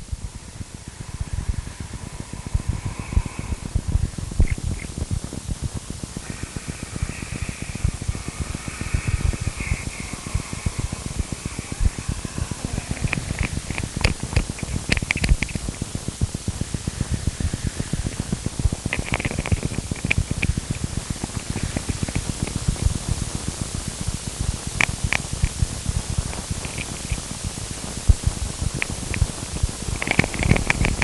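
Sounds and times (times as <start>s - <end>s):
constant hiss: 0.0s - 31.0s
crackling low rumble: 0.0s - 31.0s
sharp clicks: 5.8s - 22.9s, 30.0s - 31.0s.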